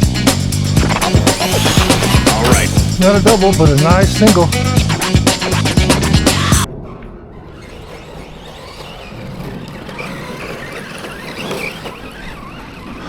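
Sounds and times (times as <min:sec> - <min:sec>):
electric motor whining: 0:00.8 - 0:04.6, 0:07.8 - 0:13.0.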